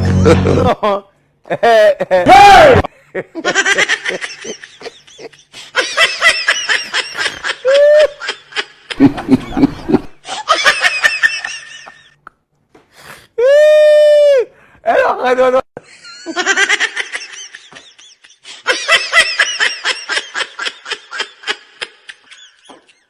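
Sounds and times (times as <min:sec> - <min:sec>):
deeper laugh: 0:00.0 - 0:08.2, 0:08.9 - 0:11.0
laughter in bursts: 0:00.1 - 0:02.3, 0:02.9 - 0:12.2, 0:15.8 - 0:23.0.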